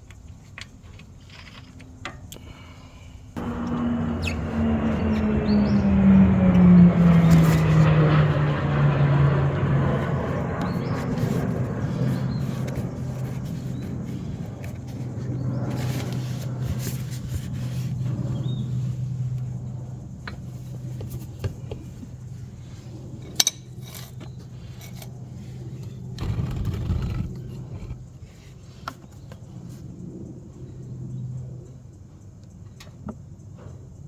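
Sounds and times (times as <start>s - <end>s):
steady low hum: 2.4s - 21.0s, 24.8s - 28.4s.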